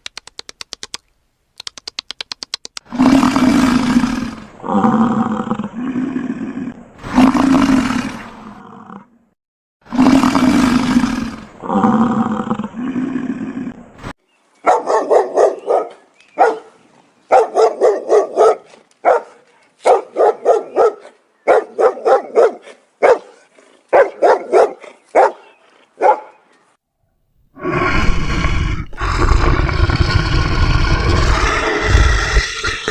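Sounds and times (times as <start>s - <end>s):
deep roar: 2.9s - 9.1s, 9.9s - 13.9s, 27.6s - 32.9s
dog barking: 14.6s - 26.4s.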